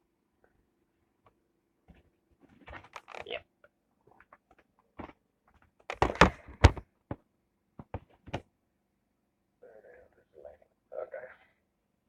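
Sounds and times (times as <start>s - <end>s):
thumps: 5.9s - 7.2s, 7.8s - 8.5s.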